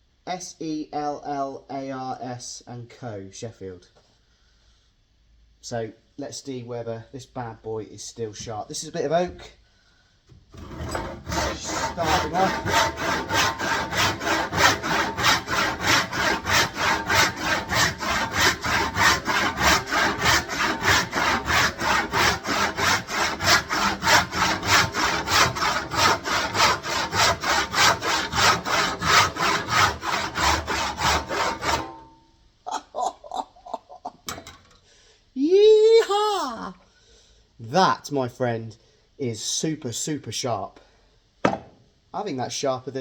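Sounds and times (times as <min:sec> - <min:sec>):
hand saw cutting wood: 0:10.5 - 0:32.2.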